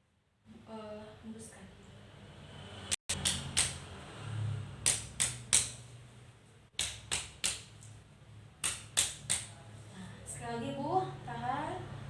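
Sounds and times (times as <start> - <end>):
cupped-hand slaps on back: 3.1 - 3.8, 4.8 - 5.8, 6.7 - 8.0, 8.6 - 9.6.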